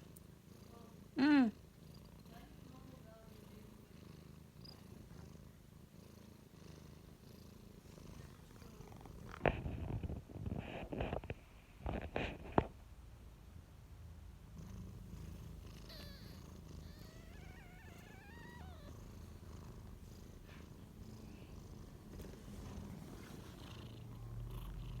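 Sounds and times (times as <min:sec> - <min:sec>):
cat purring: 0:00.0 - 0:12.8, 0:14.4 - 0:25.0
kitten squeaks: 0:15.9 - 0:19.0.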